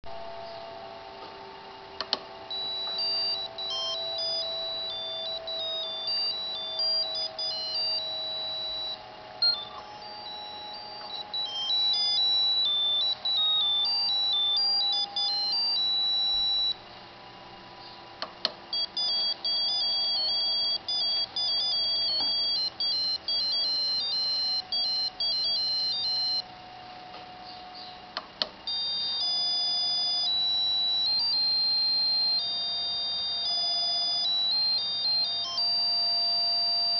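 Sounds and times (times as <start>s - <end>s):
electronic beeping melodies: 0.1s - 16.9s, 18.6s - 36.9s.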